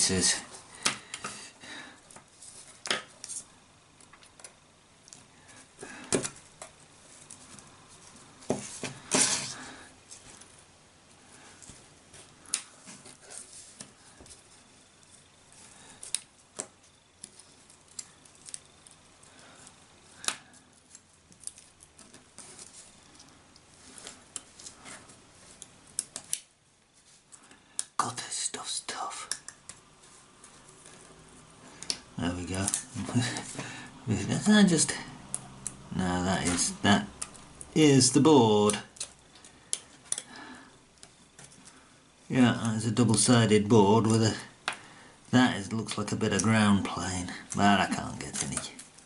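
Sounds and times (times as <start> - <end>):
hand tool scraping plastic: 8.6 - 9.8.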